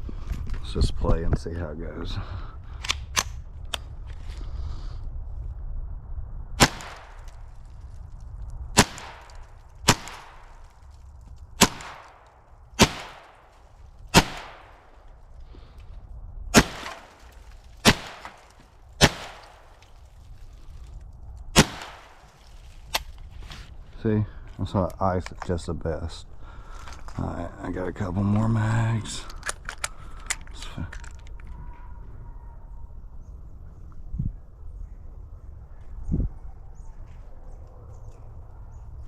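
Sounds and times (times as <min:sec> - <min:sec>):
pistol shots with echo: 0:06.6 - 0:07.3, 0:08.8 - 0:10.6, 0:11.6 - 0:12.2, 0:12.8 - 0:13.5, 0:14.1 - 0:15.0, 0:16.6 - 0:17.2, 0:17.8 - 0:19.8, 0:21.6 - 0:22.3.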